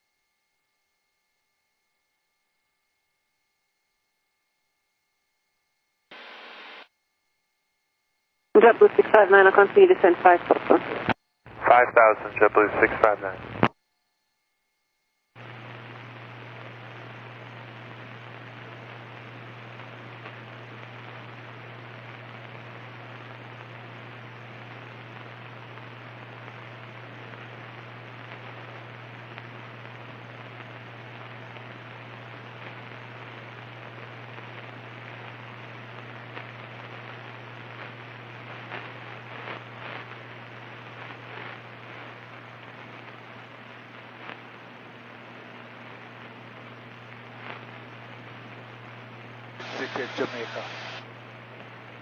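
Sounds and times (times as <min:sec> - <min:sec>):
cockpit hiss: 0:08.6 - 0:13.6, 0:49.6 - 0:51.1.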